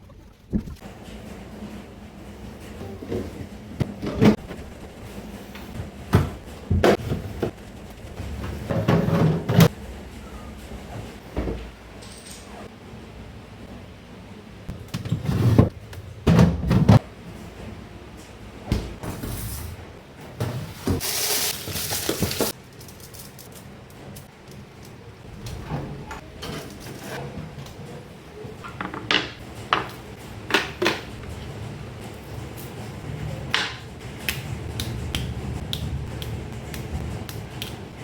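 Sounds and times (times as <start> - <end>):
items clattering: 0.6 - 9.8, 14.8 - 17.0, 19.0 - 24.2, 25.0 - 34.6.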